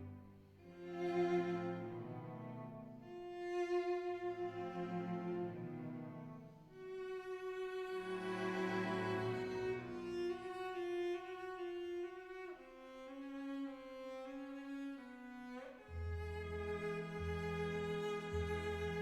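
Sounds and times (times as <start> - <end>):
slow instrumental music: 15.8 - 19.0.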